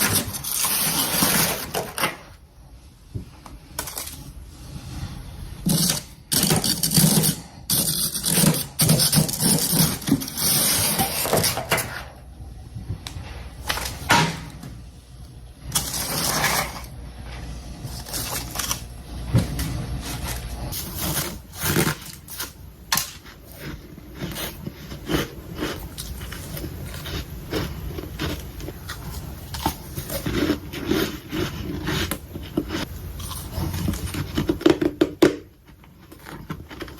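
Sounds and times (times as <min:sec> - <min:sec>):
chewing crunchy frost: 0:23.2 - 0:34.4.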